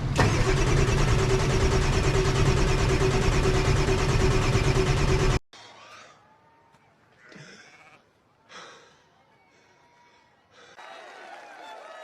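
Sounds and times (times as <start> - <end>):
diesel engine cranking on starter: 0.0 - 5.4.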